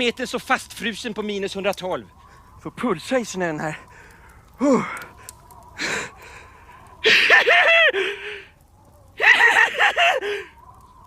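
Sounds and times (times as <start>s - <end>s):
short pitched gasps: 3.9s - 5.2s.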